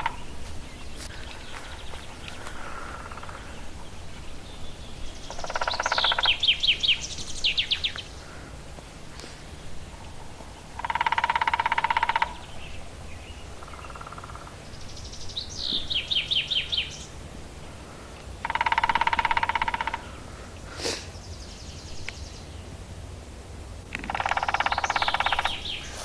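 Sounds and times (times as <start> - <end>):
woodpecker drumming on wood: 0.0 - 0.4, 5.3 - 6.5, 10.8 - 12.5, 18.4 - 20.1, 23.9 - 26.0
songbird singing: 0.0 - 26.0.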